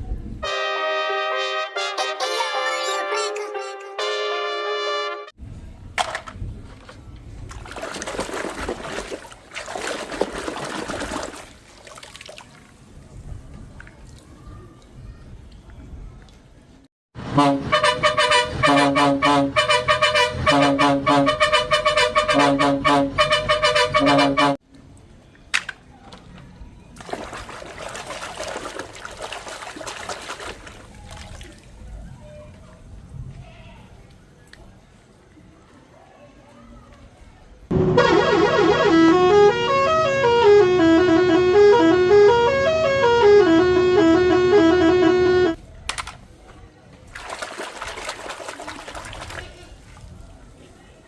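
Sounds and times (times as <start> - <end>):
horn-like music: 0.4 - 5.4, 17.2 - 24.6, 37.7 - 45.6
water splashing over toy cars: 5.9 - 16.6, 24.9 - 33.1, 47.0 - 51.0.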